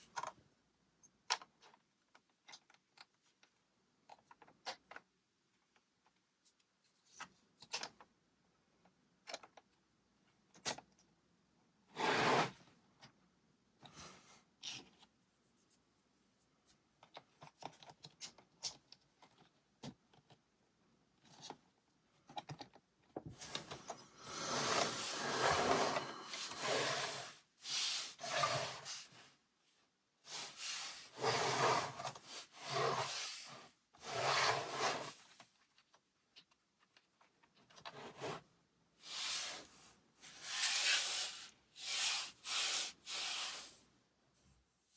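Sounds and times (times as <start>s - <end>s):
plastic pieces rubbing and scraping: 23.4s - 29.2s, 30.3s - 36.5s.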